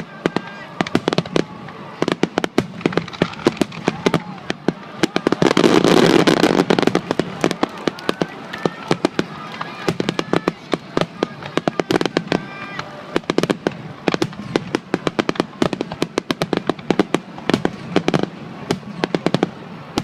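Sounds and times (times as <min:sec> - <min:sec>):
fireworks crackling and bursting: 0:00.0 - 0:20.0.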